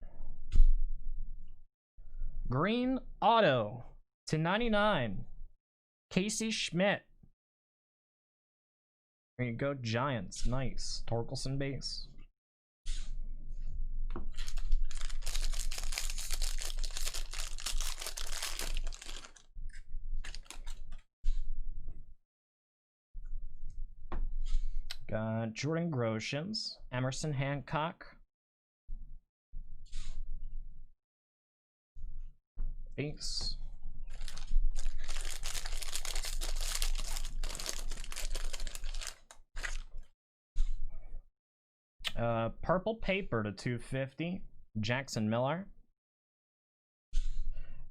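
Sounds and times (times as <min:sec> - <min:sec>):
foil wrapper tearing and crinkling: 0:14.4 - 0:19.5, 0:20.2 - 0:20.8, 0:34.1 - 0:40.0.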